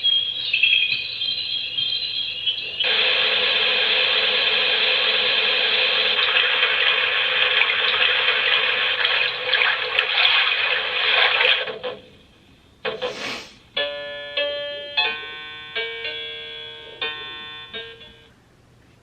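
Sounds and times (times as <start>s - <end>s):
brief hiss: 13.0s - 13.6s
chime-like lullaby tune: 13.8s - 18.3s.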